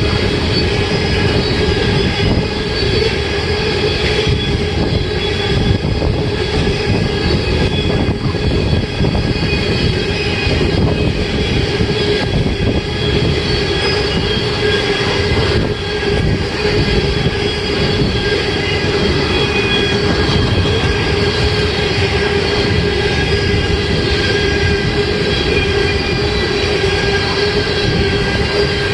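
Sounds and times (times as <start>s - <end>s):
faint wheel squeal: 0.0s - 28.9s
train wheels rumbling on rail: 0.0s - 28.9s.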